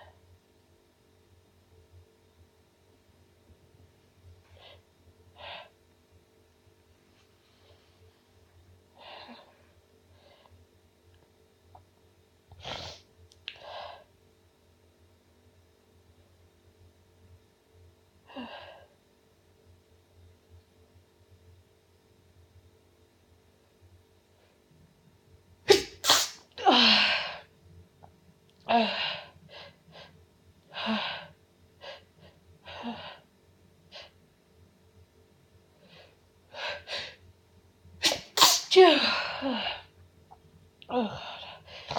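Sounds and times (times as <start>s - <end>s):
woman sneezing: 25.7s - 27.4s, 38.0s - 39.8s.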